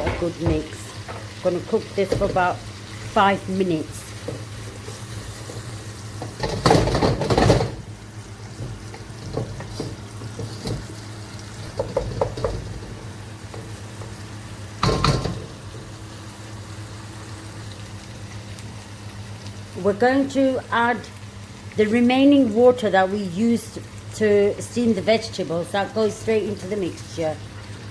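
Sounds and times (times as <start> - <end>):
spoon scraping a cooking pan: 8.6 - 14.2.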